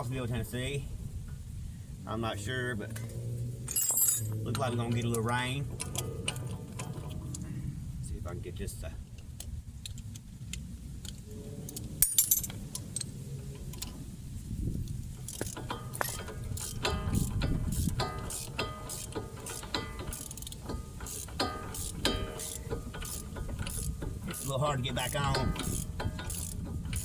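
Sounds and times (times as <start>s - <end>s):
sharp metallic clank: 3.7s - 4.7s, 12.0s - 12.5s, 15.4s - 26.6s
ratchet wrench clicking: 15.2s - 27.0s.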